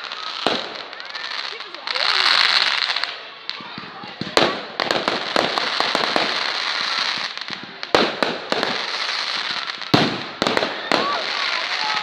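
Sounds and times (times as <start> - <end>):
fireworks crackling and banging: 0.0 - 12.0.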